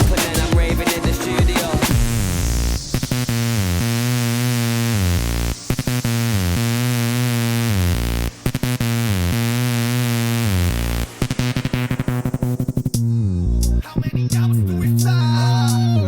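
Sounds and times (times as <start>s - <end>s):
drum and bass music: 0.0s - 16.0s.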